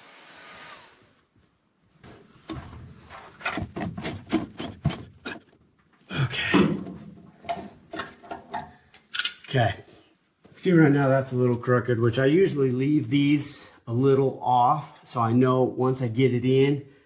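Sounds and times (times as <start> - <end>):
metal parts clicking and scraping: 8.0 - 9.5.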